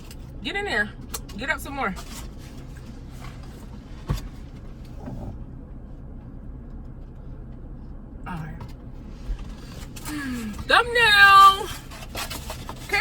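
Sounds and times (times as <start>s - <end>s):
car cabin hum: 0.0s - 13.0s.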